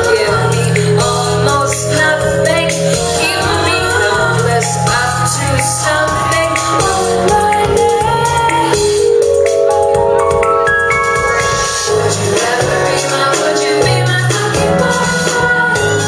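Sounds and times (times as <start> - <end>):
live band playing: 0.0 - 16.0
person singing: 0.0 - 16.0.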